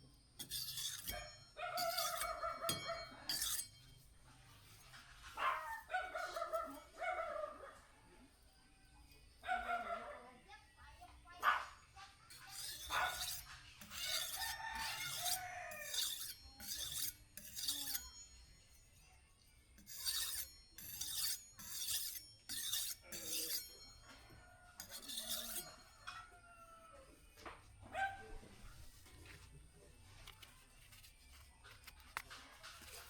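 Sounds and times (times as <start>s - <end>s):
rhythmic scraping of steel blade: 0.0s - 33.0s
faint rooster crowing: 14.0s - 16.2s, 24.0s - 29.4s.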